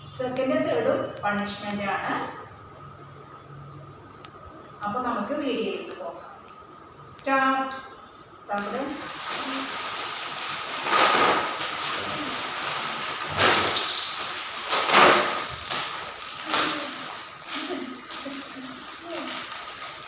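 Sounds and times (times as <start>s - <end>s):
chip packet crinkling: 8.6s - 20.0s
potato chips crunching: 8.9s - 20.0s.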